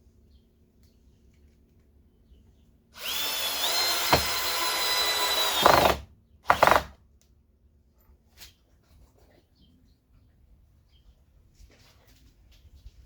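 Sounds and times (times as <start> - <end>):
power drill whining: 3.0 - 7.0.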